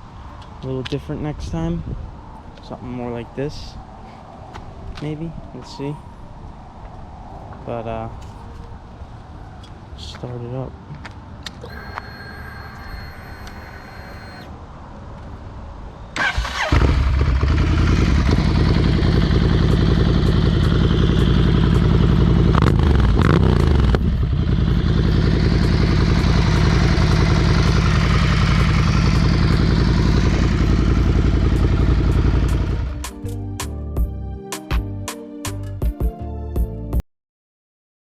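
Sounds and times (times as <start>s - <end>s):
motorcycle engine starting and revving: 11.6s - 14.5s, 16.2s - 33.0s.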